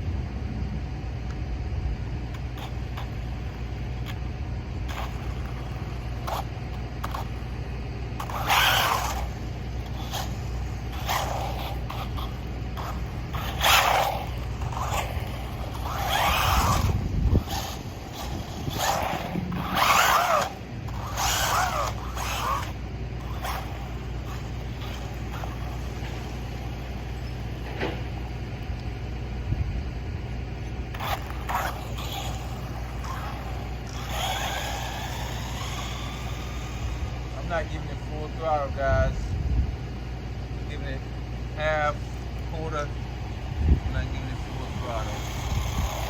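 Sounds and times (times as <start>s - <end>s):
electric toy car motor whining: 2.3s - 28.9s, 30.4s - 38.7s, 41.6s - 46.0s.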